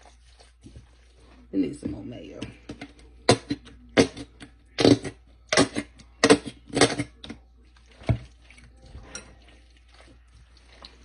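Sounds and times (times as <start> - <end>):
wet squelching sounds: 0.0 - 2.0, 5.6 - 11.0.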